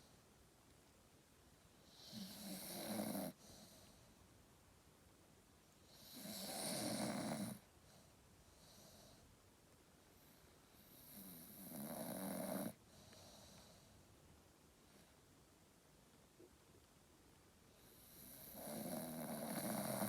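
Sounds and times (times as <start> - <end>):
dog snoring: 1.8 - 4.0, 5.9 - 9.2, 10.2 - 13.9, 17.8 - 20.0.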